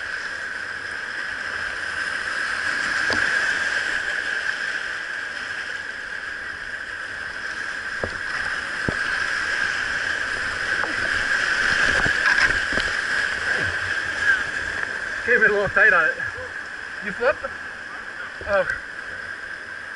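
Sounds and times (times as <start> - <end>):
rushing whitewater: 0.0 - 19.9
sharp knocks and splashes: 2.9 - 3.7, 7.9 - 9.7, 10.3 - 14.0.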